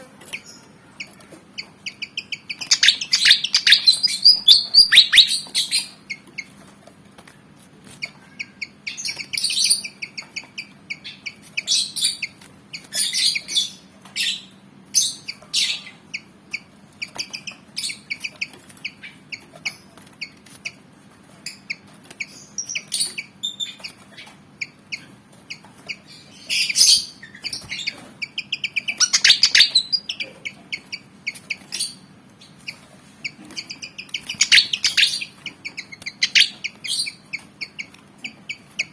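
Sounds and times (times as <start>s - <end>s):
bird singing chirpy notes: 1.9s - 6.0s, 26.4s - 30.3s, 33.8s - 35.4s.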